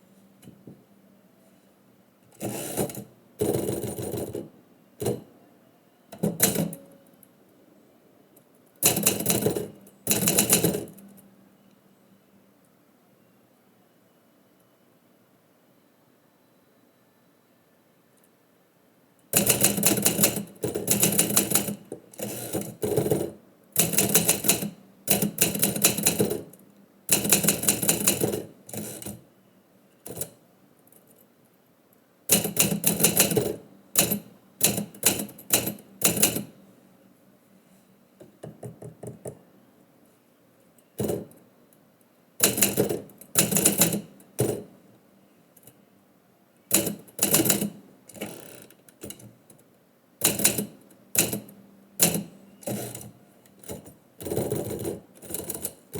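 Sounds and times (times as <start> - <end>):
typewriter keys clicking: 34.0 - 36.5.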